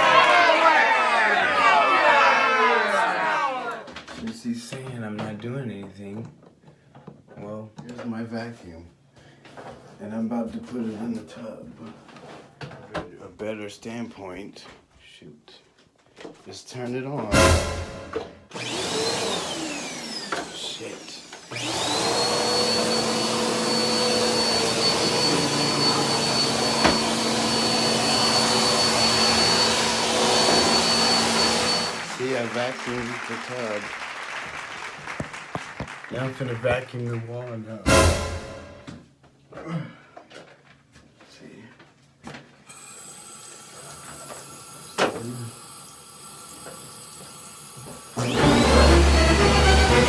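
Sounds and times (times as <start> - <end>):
sharp knock: 17.3 - 18.4
vacuum cleaner whine: 17.4 - 33.7, 37.9 - 38.9, 42.7 - 50.0.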